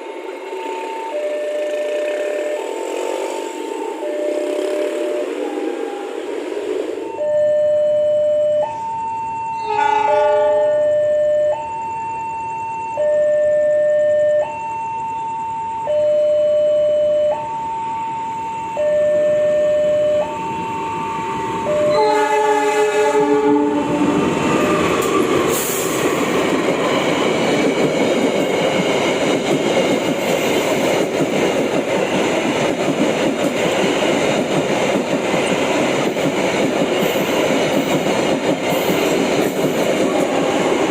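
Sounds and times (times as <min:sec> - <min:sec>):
train rumbling past: 0:00.0 - 0:07.5, 0:20.1 - 0:40.9
train horn blast: 0:00.5 - 0:06.4, 0:09.6 - 0:10.9, 0:21.7 - 0:24.3
level crossing alarm: 0:00.7 - 0:06.3, 0:07.0 - 0:25.4.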